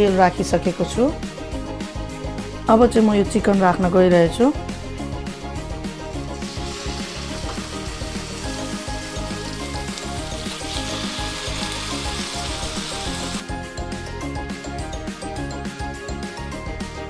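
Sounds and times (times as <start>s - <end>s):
chicken sizzling in hot oil: 5.6s - 13.4s.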